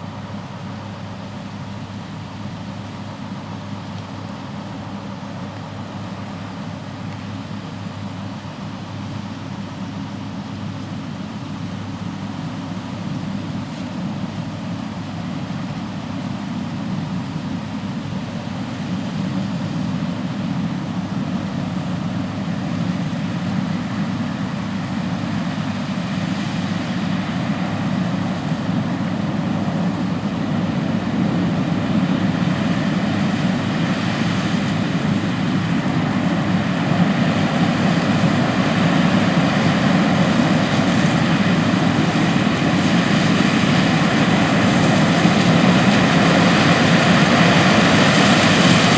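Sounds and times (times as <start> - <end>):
combine harvester running: 0.0 - 48.9.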